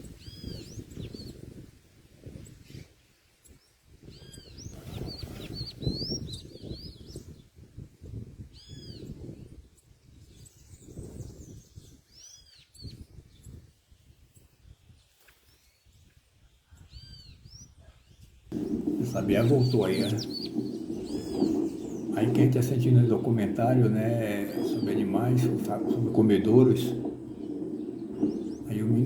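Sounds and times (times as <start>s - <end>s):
small birds chirping: 3.6s - 7.2s, 18.5s - 29.0s
low rumbling noise: 18.5s - 29.0s.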